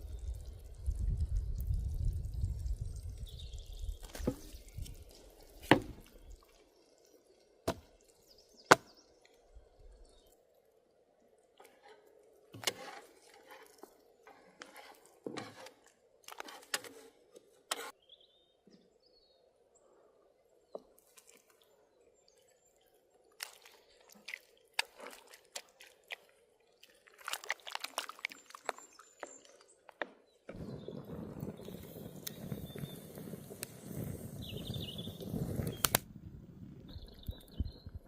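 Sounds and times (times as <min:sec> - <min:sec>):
wet squishing: 0:21.0 - 0:21.6, 0:23.3 - 0:30.0.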